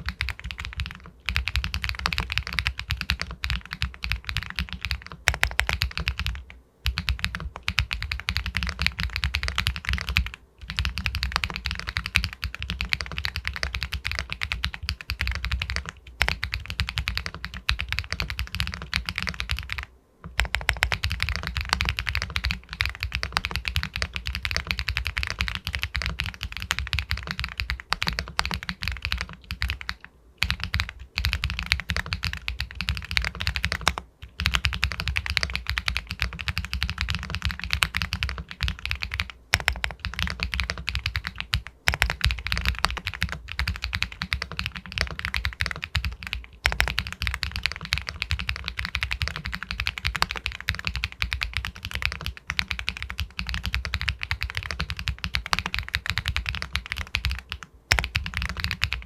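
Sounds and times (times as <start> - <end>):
mechanical keyboard key clacks: 20.4 - 59.0.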